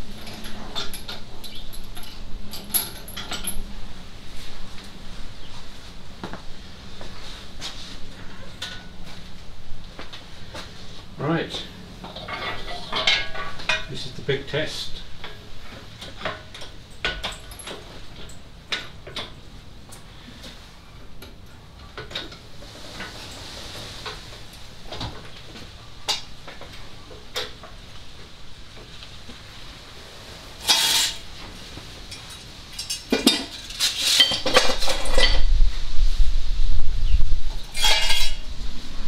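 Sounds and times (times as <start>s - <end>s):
metallic clinks and knocks: 0.1s - 3.6s, 16.1s - 19.4s
metal clatter: 12.0s - 14.1s, 30.6s - 31.3s, 37.6s - 38.5s.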